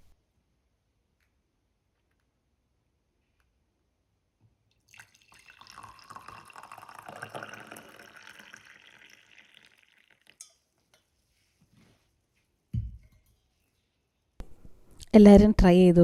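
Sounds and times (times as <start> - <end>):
liquid pouring into a cup: 4.8 - 10.7.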